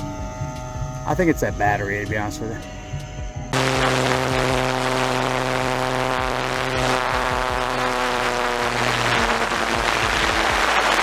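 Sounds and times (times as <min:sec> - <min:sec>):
model plane motor buzzing: 0:03.5 - 0:11.0
propeller rushing hiss: 0:03.6 - 0:11.0.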